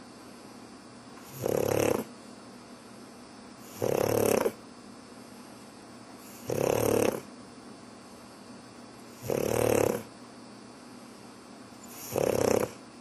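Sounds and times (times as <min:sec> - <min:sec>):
dog snoring: 0:01.2 - 0:02.2, 0:03.6 - 0:04.6, 0:06.2 - 0:07.3, 0:09.1 - 0:10.1, 0:11.8 - 0:12.8.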